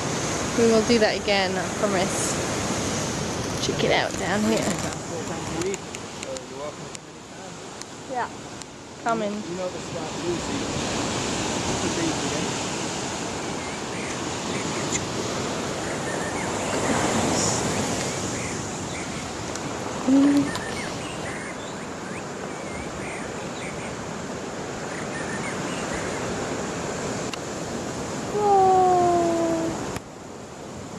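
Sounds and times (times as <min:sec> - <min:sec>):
ocean surf rushing: 0:00.0 - 0:30.9
faint chirps: 0:20.0 - 0:24.0.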